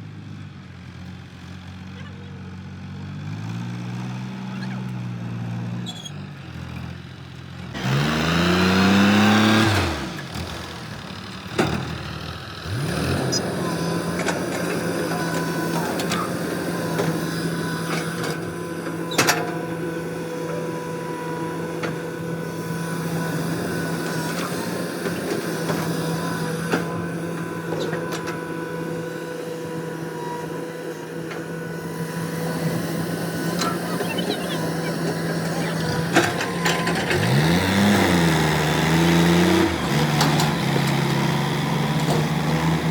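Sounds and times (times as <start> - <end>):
machine hum: 13.1 - 42.9.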